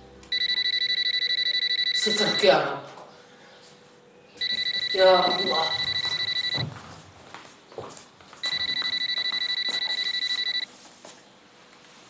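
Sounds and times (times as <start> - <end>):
telephone ringing: 0.3 - 2.7, 4.4 - 6.7, 8.4 - 10.7.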